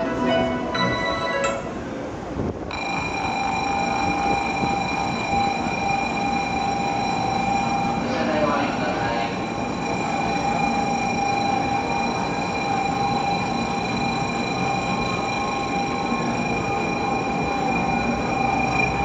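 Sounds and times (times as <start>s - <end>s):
constant high whine: 0.0s - 19.0s
train hum and rush: 0.0s - 19.0s.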